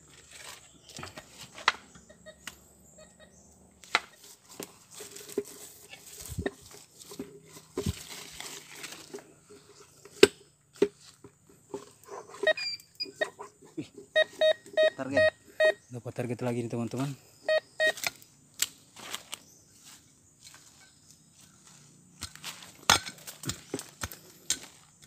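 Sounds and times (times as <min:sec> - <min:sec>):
footsteps on stony ground: 0:04.1 - 0:09.3, 0:18.9 - 0:25.0.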